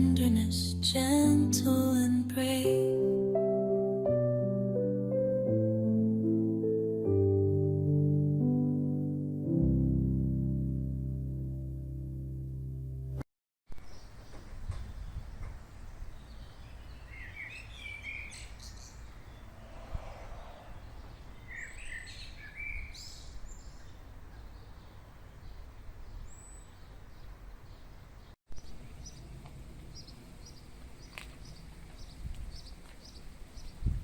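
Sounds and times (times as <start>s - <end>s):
small birds chirping and singing: 13.7s - 34.0s
low outdoor rumble: 19.0s - 21.5s, 28.6s - 33.6s.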